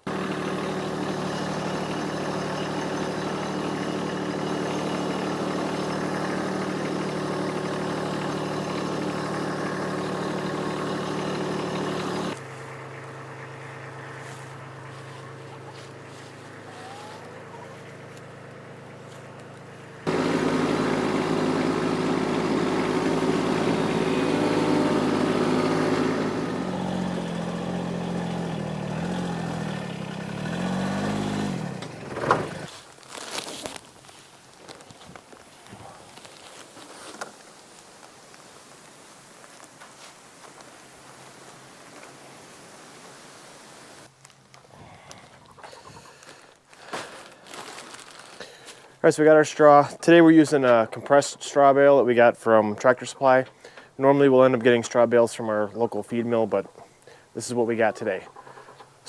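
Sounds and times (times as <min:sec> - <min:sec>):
utility vehicle engine running: 0:00.0 - 0:32.7.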